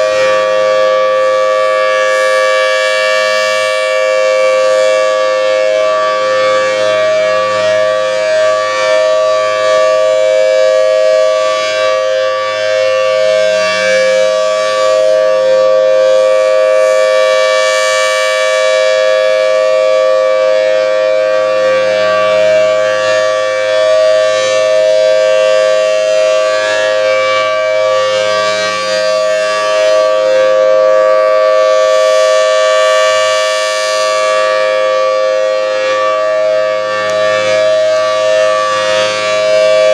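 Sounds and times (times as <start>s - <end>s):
civil defense siren two-note chord: 0.0s - 39.9s.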